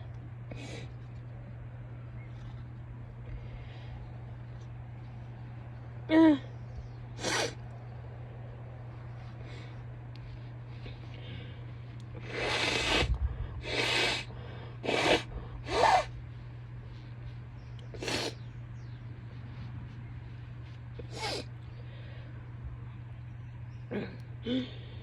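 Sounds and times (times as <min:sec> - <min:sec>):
woman sniffling: 0:12.2 - 0:16.1, 0:21.0 - 0:21.5.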